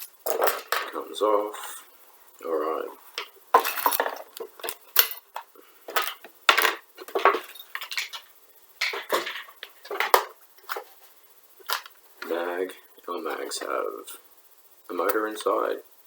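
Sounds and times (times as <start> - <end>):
plastic parts clicking and clattering: 0.0 - 1.0, 3.2 - 10.9, 11.6 - 12.4.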